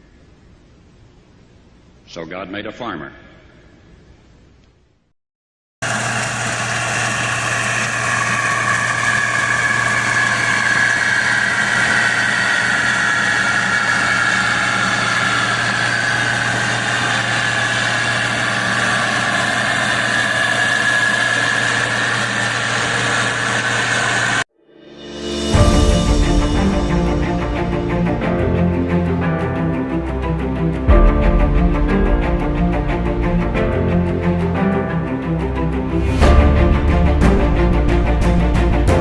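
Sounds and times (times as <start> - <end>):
harvester engine running: 5.8 - 24.4.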